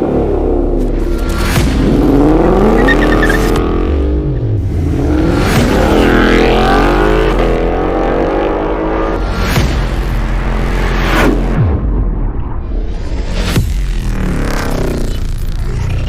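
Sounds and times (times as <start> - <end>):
car engine revving: 0.0 - 11.6.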